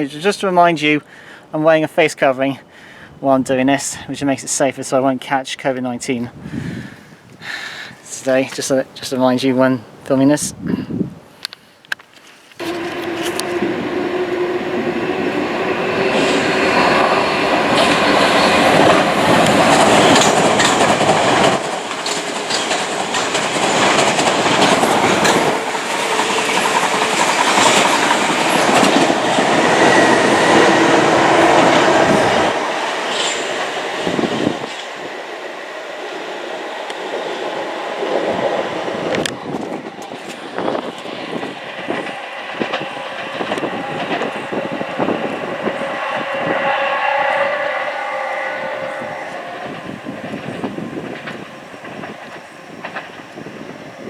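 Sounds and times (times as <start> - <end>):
train passing: 12.6 - 54.0.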